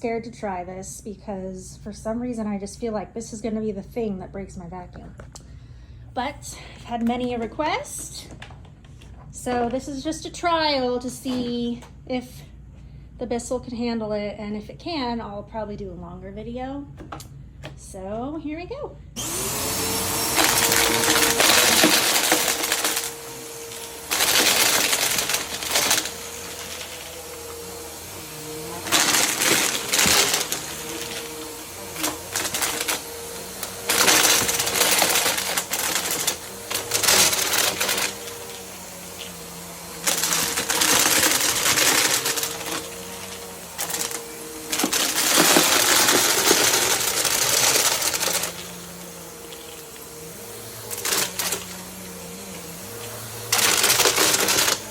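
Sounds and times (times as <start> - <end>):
vacuum cleaner motor hum: 19.2 - 54.9.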